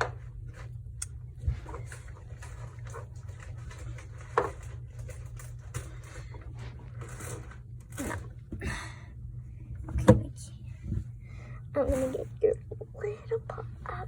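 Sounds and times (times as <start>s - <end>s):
steady low hum: 0.0s - 14.0s
soft rustling and handling: 0.2s - 8.3s.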